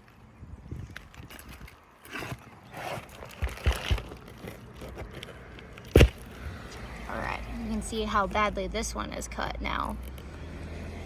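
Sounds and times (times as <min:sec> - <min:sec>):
tool scraping against shingles: 0:01.2 - 0:06.9.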